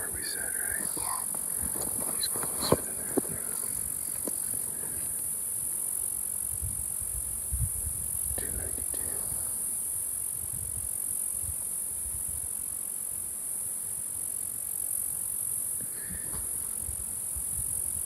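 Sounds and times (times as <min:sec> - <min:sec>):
microphone rumbling: 0:00.0 - 0:05.2, 0:15.8 - 0:16.8.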